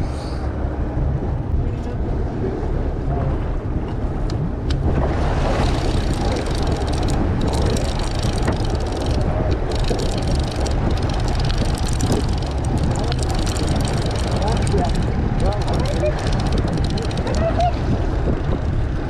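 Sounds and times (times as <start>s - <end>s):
boat engine rumble: 0.0s - 19.0s
wind rushing: 4.5s - 19.0s.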